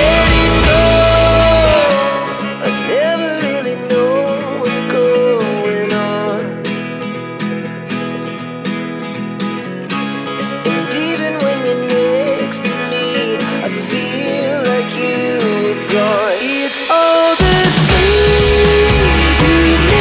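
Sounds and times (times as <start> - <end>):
person singing: 0.0 - 6.6, 10.7 - 20.0
acoustic guitar: 0.0 - 20.0.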